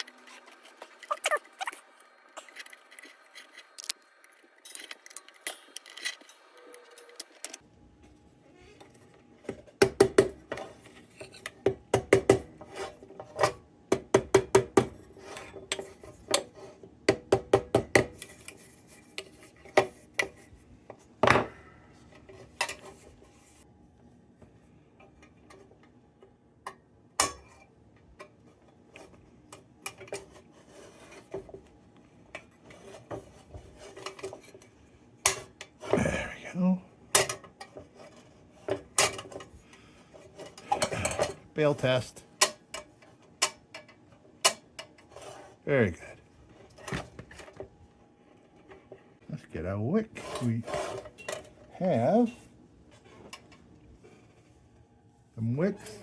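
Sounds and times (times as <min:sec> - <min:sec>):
metal parts clinking and clicking: 0:02.4 - 0:07.6.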